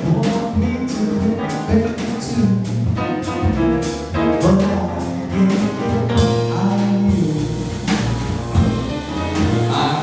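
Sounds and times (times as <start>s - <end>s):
jazz backing music: 0.0s - 10.0s
person singing ballad: 4.7s - 8.1s.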